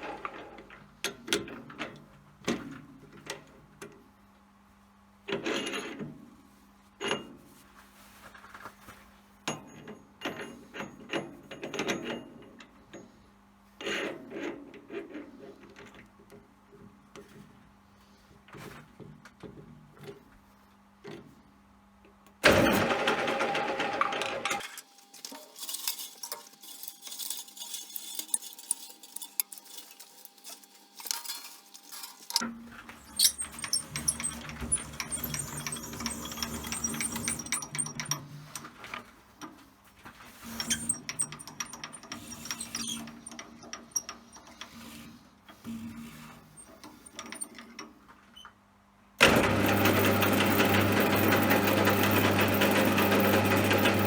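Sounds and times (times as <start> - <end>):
tools clicking and clinking: 24.6 - 32.4, 33.0 - 38.2.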